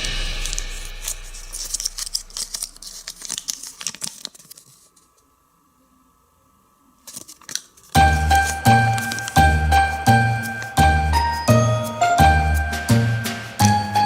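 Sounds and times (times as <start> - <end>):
loud music with steady beat: 0.0 - 1.6, 8.0 - 14.0
foil wrapper crinkling and tearing: 0.0 - 5.2, 7.0 - 10.8.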